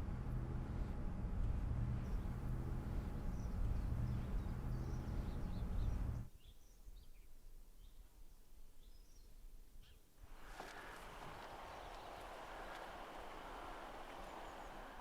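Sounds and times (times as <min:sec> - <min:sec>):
car engine idling: 0:00.0 - 0:06.3, 0:10.3 - 0:15.0
faint birds chirping: 0:00.0 - 0:15.0.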